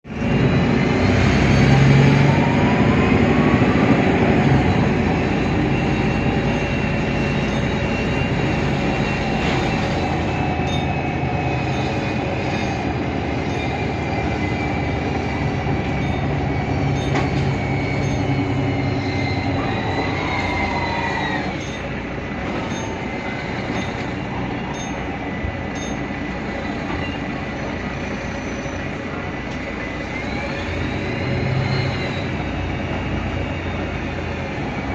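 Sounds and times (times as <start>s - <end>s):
bus drivetrain whining: 0.0s - 34.9s.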